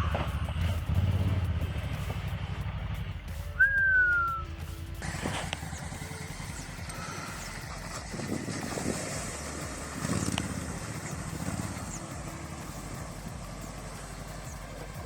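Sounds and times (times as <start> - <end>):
vehicle engine running at low revs: 0.0 - 15.0.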